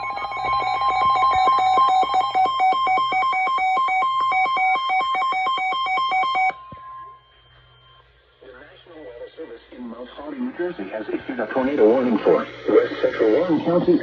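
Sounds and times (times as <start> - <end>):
warbling electronic alert tone: 0.0 - 7.9.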